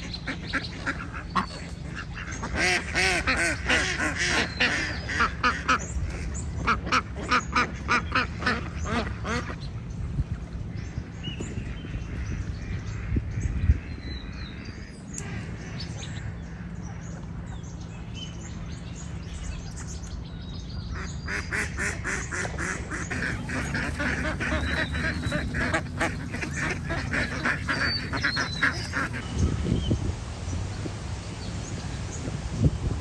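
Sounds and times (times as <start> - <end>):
steady low rumble: 0.0 - 33.0
waterfowl calling rapidly: 21.0 - 29.6.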